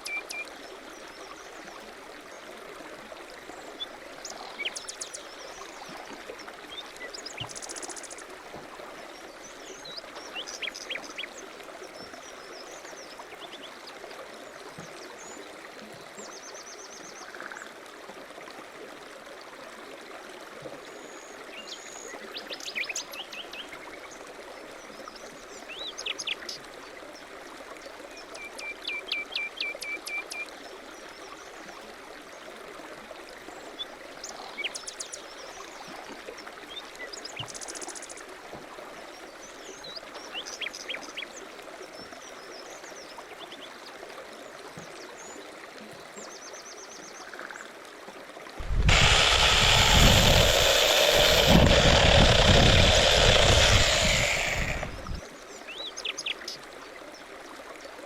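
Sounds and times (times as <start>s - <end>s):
steady rushing hiss: 48.6s - 55.2s.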